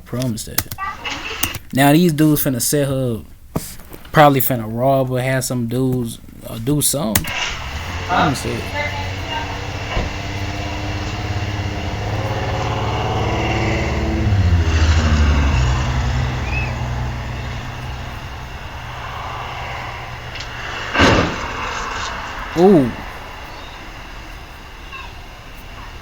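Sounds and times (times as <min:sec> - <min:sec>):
car engine running: 0:07.2 - 0:26.0.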